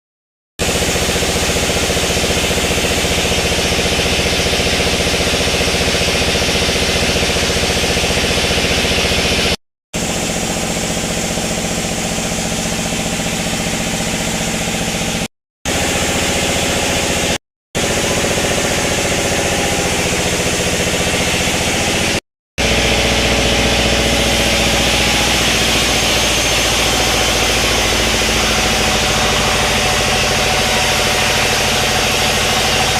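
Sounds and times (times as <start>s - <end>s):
sawmill machinery droning: 0.6s - 32.9s.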